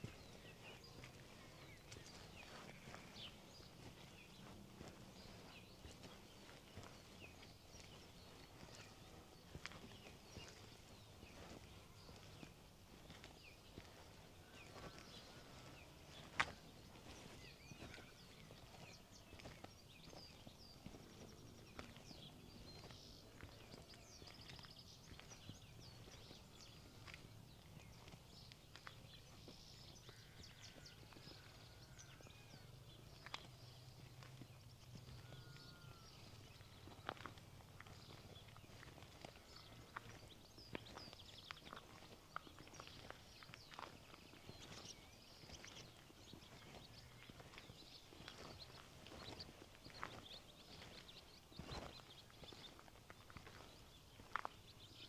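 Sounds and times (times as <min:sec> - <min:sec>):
small birds chirping: 0:00.0 - 0:55.0.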